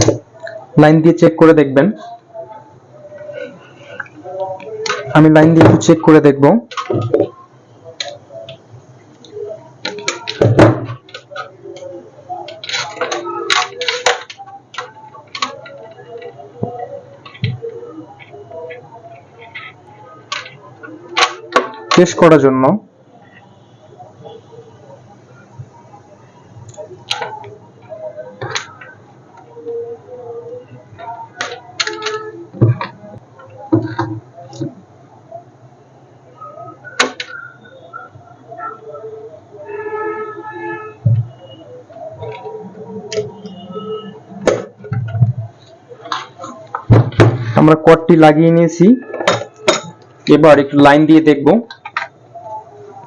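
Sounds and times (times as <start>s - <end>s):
small parts clicking and tapping: 9.2s - 17.7s, 20.3s - 22.1s, 31.0s - 32.9s.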